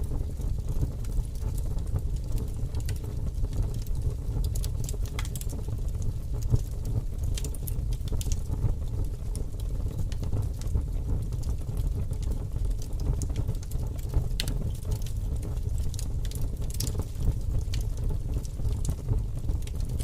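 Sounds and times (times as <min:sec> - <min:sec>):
fire flames rumbling: 0:00.0 - 0:20.0
logs crackling and popping: 0:00.0 - 0:20.0.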